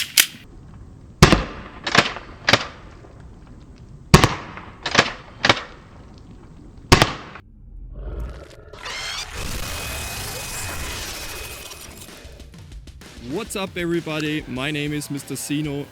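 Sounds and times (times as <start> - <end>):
sharp gun shots with echo: 4.1 - 5.8, 6.9 - 7.4.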